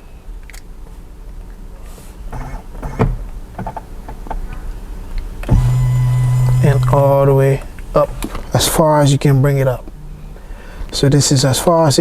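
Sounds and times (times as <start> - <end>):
mechanical clicks and knocks: 2.3 - 7.0.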